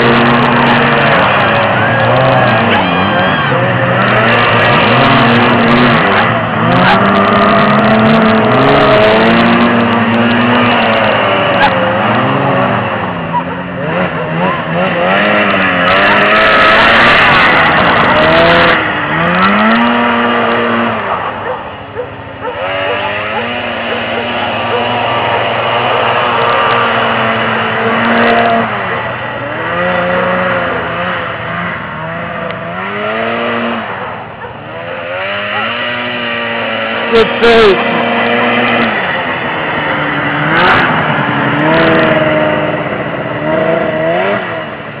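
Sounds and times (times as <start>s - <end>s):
loud rushing noise: 0.0s - 45.0s
snowmobile engine revving: 0.0s - 45.0s.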